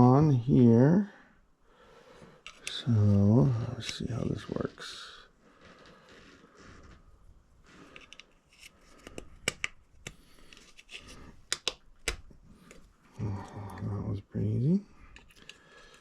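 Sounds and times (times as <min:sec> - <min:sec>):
rubbing and handling: 0:02.0 - 0:13.2.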